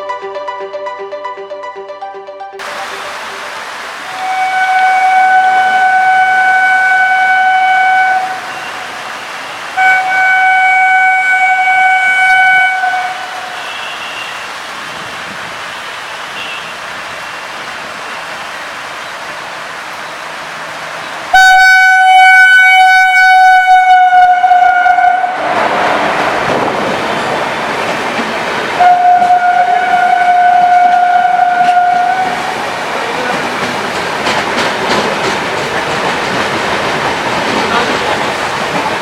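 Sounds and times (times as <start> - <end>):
heavy rain hissing: 2.6 - 11.6, 12.7 - 21.4, 25.5 - 28.8
train wheels rumbling on rails: 2.6 - 39.0
train horn blasts: 4.0 - 14.6, 15.8 - 17.6, 21.3 - 25.6, 28.8 - 32.6.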